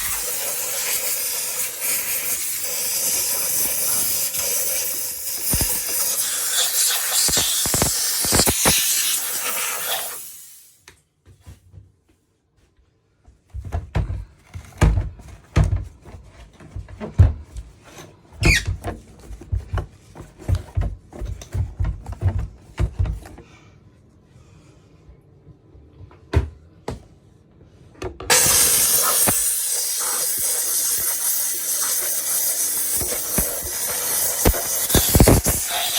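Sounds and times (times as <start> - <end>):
steam cleaner hissing: 0.0 - 10.8, 28.3 - 35.9.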